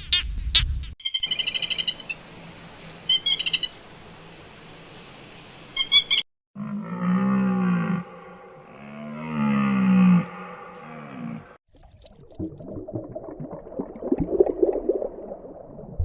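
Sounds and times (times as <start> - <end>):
bird trilled chirps: 1.0 - 2.2, 3.1 - 3.7, 5.8 - 6.2
low moaning call: 6.6 - 11.6.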